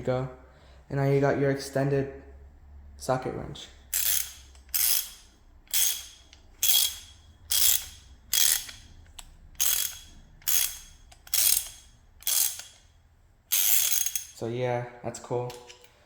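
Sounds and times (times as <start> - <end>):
ratchet wrench clicking: 3.9 - 14.4.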